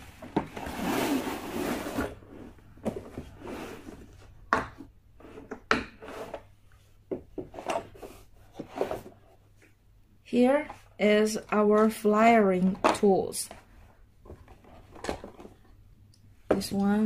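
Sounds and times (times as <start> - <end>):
tool box sliding open: 0.2 - 4.2.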